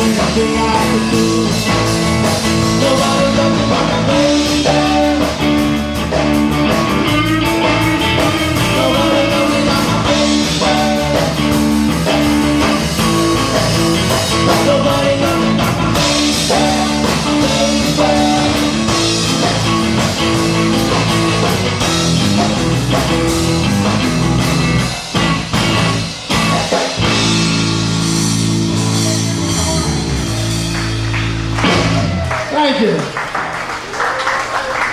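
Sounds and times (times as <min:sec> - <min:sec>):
live rock band playing: 0:00.0 - 0:32.5
drum hits: 0:01.6 - 0:32.3.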